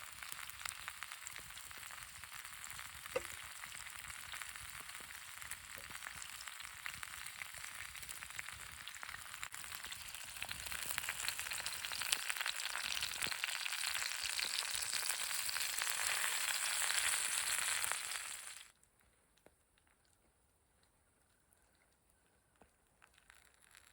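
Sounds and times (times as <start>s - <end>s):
food sizzling in hot oil: 0.0s - 18.7s, 23.1s - 23.9s.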